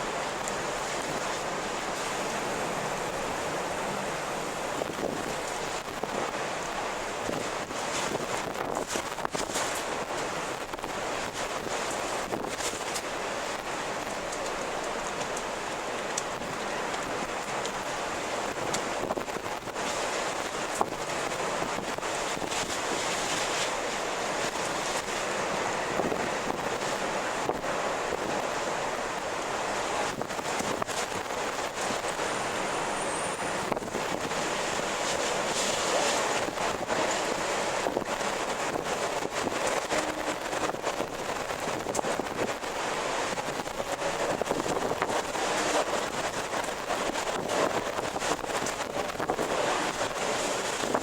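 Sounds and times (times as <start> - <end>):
rushing storm wind: 0.0 - 51.0.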